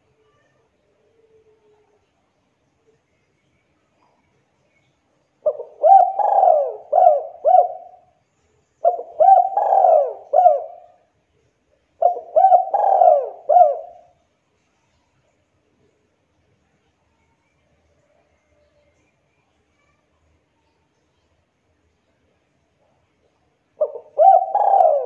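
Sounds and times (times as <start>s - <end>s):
dove cooing: 5.4s - 8.0s, 8.8s - 11.0s, 12.0s - 14.1s, 23.8s - 25.0s.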